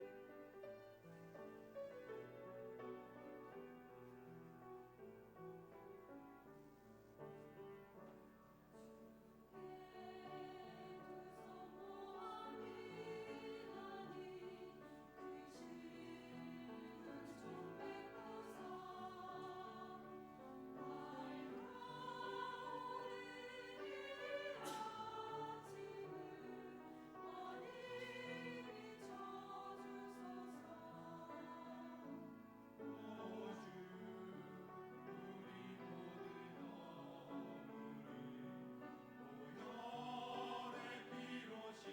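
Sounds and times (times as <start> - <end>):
group singing a hymn: 9.6 - 38.5, 39.2 - 41.9.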